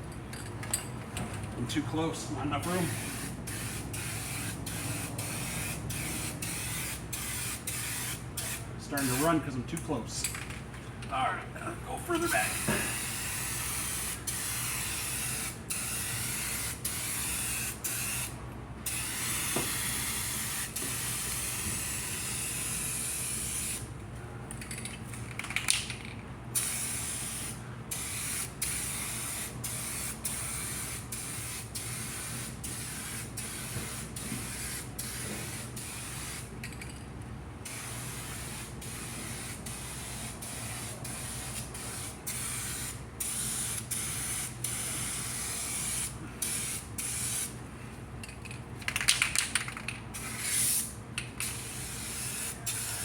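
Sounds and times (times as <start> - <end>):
spray paint hissing: 2.6 - 9.3, 12.3 - 23.9, 26.6 - 36.5, 37.7 - 47.6, 50.1 - 53.0.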